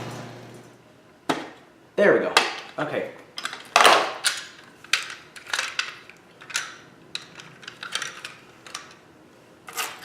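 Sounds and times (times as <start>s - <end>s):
plastic parts clicking: 3.4s - 9.0s.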